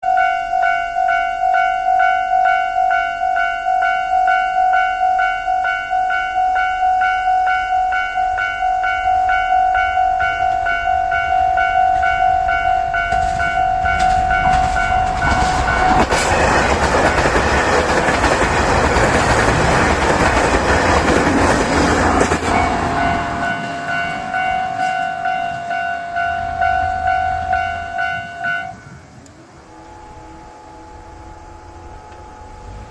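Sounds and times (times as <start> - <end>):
diesel train running: 0.0 - 32.9
level crossing warning bell: 0.0 - 32.9
wheel clatter over rail joints: 11.6 - 28.8.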